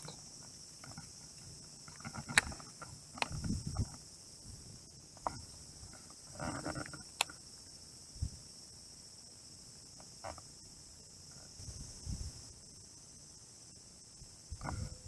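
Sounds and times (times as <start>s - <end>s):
insect chirring: 0.0s - 15.0s
sharp clicks: 1.9s - 3.5s.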